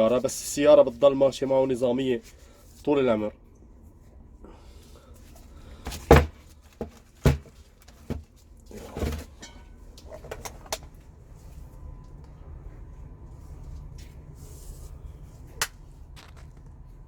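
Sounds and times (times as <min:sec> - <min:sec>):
low steady hum: 0:00.0 - 0:17.0
sharp knocks and clatters: 0:16.2 - 0:16.7.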